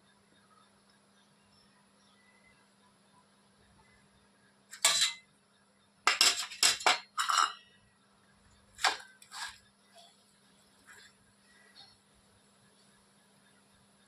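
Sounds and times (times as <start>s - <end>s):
dishes and utensils clinking: 4.7s - 5.2s, 6.1s - 7.6s.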